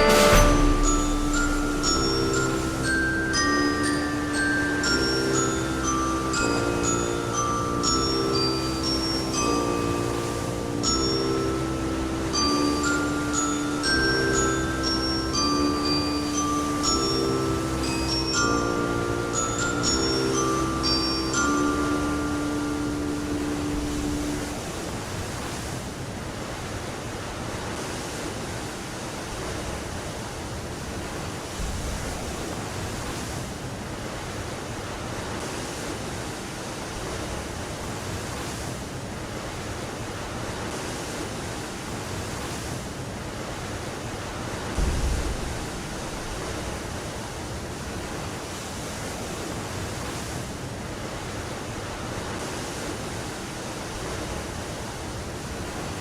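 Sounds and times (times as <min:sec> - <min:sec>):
sea rushing: 0:00.0 - 0:56.0
wind: 0:00.0 - 0:56.0
low thud: 0:44.8 - 0:46.2.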